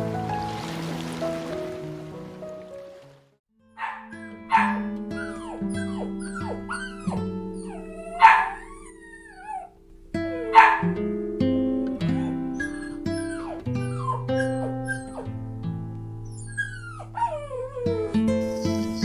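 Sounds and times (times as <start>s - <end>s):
dog whining and yelping: 3.8s - 11.0s, 11.8s - 15.4s, 16.2s - 19.0s
dog barking: 3.8s - 11.1s, 12.0s - 15.4s, 16.3s - 18.1s.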